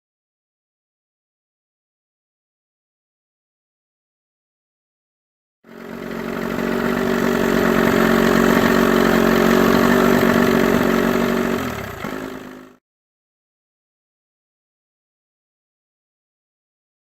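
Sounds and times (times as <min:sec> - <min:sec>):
outboard motor running: 0:05.7 - 0:12.8.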